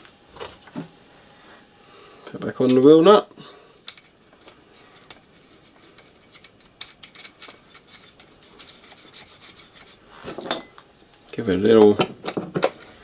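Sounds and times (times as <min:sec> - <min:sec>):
faint rubbing with small clicks: 0:04.0 - 0:10.4.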